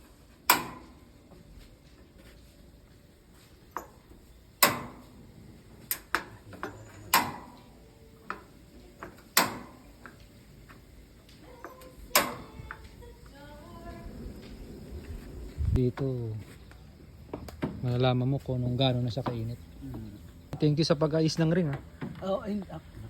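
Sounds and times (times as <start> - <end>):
metallic clanks on grill: 0.5 - 1.0, 3.7 - 5.2, 5.8 - 7.7, 8.3 - 10.2, 11.6 - 12.8.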